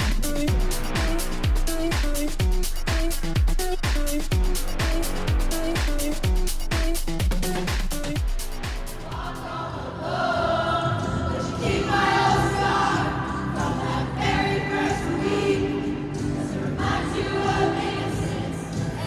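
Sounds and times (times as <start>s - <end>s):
voices singing together: 8.9s - 19.0s
low musical accompaniment: 10.1s - 19.0s.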